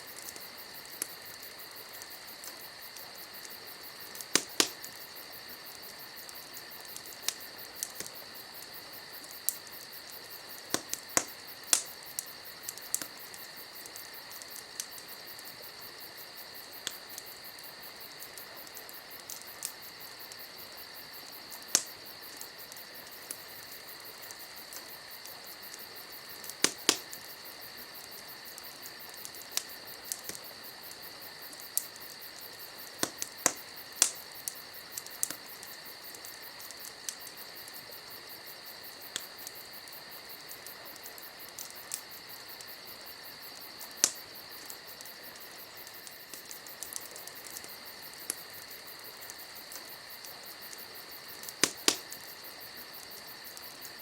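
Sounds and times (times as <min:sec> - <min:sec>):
campfire crackling and popping: 0:00.0 - 0:54.0
crickets chirping: 0:00.0 - 0:54.0.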